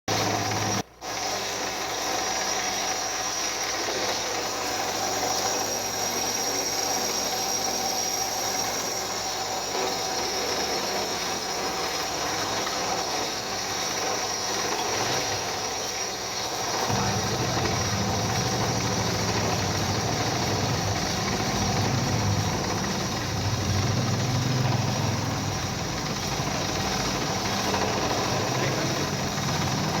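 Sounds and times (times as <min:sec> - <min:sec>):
workshop machine running: 0:00.1 - 0:30.0
faint high whine: 0:01.3 - 0:30.0
deep low rumble: 0:16.9 - 0:28.1.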